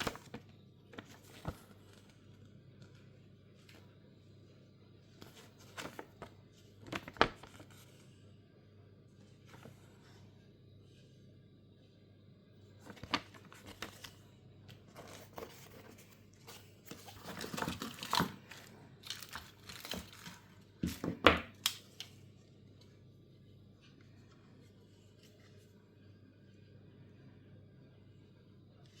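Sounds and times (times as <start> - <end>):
rustling and crinkling: 0.0 - 3.9, 5.1 - 8.1, 12.8 - 21.2.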